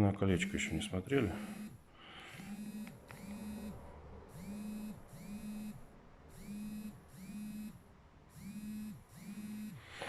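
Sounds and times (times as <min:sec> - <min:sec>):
metal detector beeping: 0:00.4 - 0:07.8.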